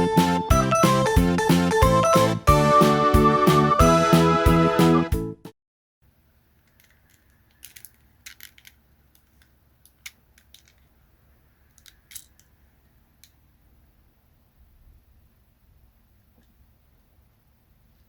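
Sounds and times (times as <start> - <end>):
music: 0.0 - 5.5
plastic toy parts clicking: 6.6 - 11.0, 11.6 - 13.5.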